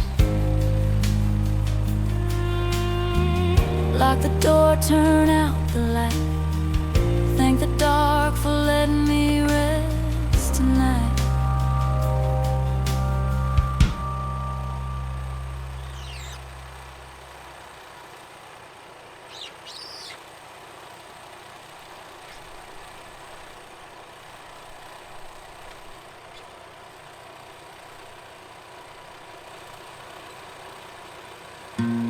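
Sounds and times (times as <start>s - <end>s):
background music: 0.0s - 16.0s, 31.8s - 32.0s
outdoor background hiss: 0.0s - 32.0s
bird chirping: 11.6s - 16.6s, 19.3s - 20.2s.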